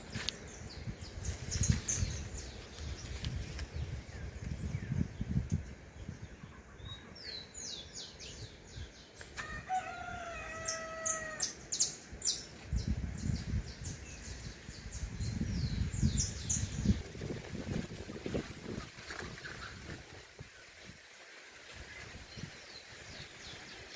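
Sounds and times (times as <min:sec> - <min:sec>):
small birds chirping: 0:00.0 - 0:09.4
rooster crowing: 0:09.4 - 0:11.6.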